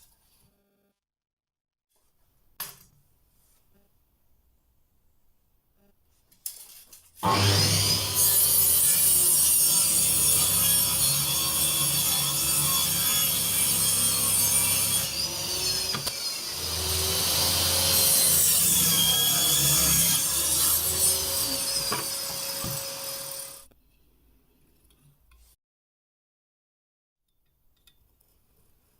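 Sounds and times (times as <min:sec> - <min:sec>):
hand tool scraping: 0:06.6 - 0:23.7.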